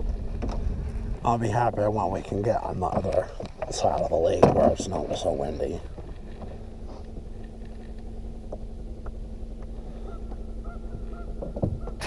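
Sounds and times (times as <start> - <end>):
low hum: 0.0 - 12.0
wind rumble on microphone: 0.0 - 12.0
faint short bird calls: 9.8 - 12.0.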